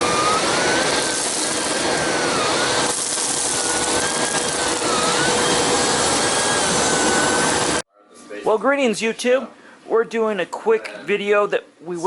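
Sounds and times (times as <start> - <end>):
vacuum cleaner running: 0.0 - 7.8.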